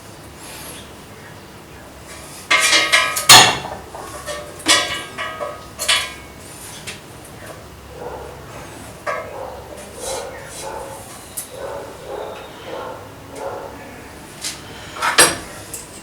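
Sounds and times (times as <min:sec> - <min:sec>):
metal tools knocking and clanking: 0:02.1 - 0:07.0, 0:09.0 - 0:13.6, 0:14.5 - 0:16.0.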